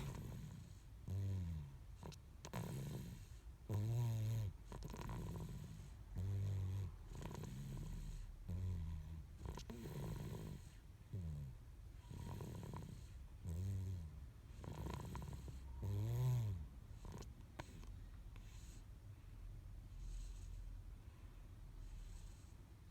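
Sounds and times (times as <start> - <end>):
soft rasping breath: 0.0 - 0.9, 16.9 - 22.9.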